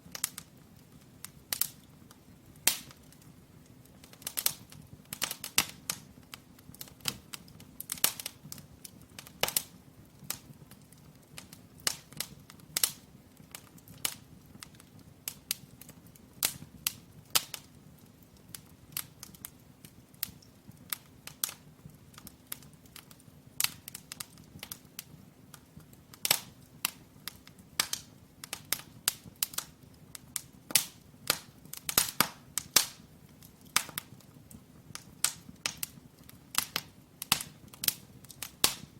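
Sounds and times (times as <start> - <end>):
firewood crackling and popping: 0.0 - 38.9.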